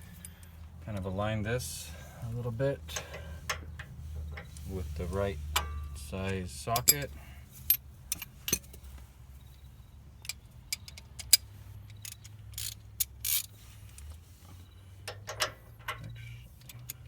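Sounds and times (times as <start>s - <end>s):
low steady hum: 0.0s - 17.0s
metal clicks and clinks: 5.5s - 7.1s, 10.2s - 14.1s, 15.0s - 17.0s.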